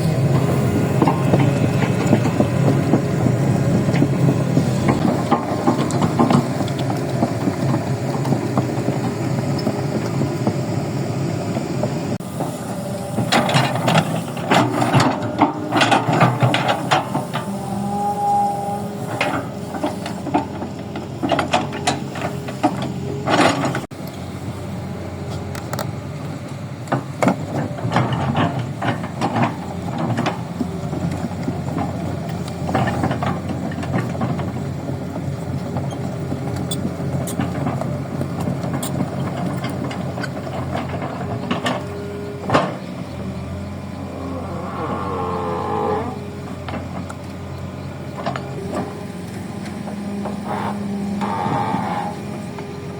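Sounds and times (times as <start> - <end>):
soil scraping and rattling: 12.2 - 23.9, 27.4 - 52.9.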